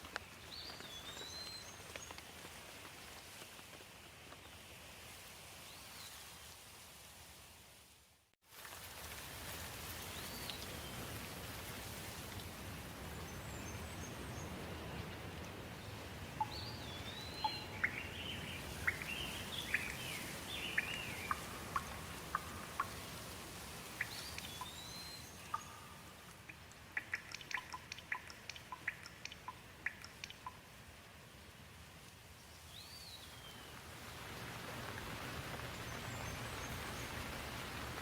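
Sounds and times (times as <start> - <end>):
steady rain: 0.0 - 38.0
sharp drip-like ticks: 10.4 - 10.8, 11.9 - 31.2
songbirds calling: 13.1 - 23.2, 23.9 - 30.6.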